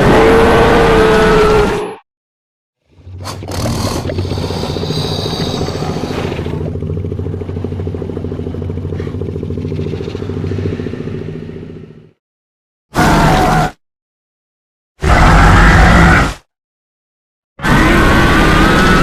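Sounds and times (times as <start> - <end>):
low rattling dinosaur growl: 3.1 - 12.2.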